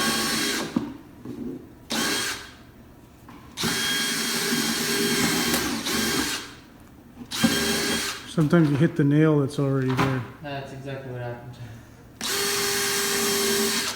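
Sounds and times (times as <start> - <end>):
power drill running into wood: 0.0 - 0.8, 1.9 - 2.6, 3.6 - 6.6, 7.3 - 8.2, 12.2 - 13.9.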